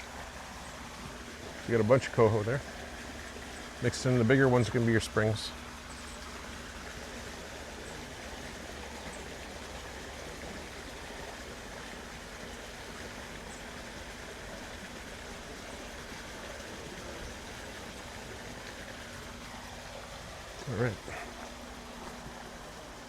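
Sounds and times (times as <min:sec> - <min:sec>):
river water rushing: 0:00.0 - 0:23.0.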